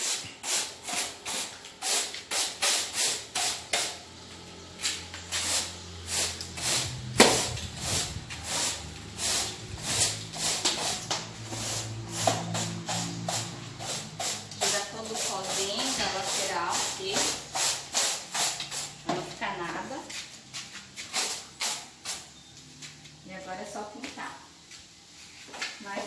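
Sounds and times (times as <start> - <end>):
broom sweeping floor: 0.0 - 26.0.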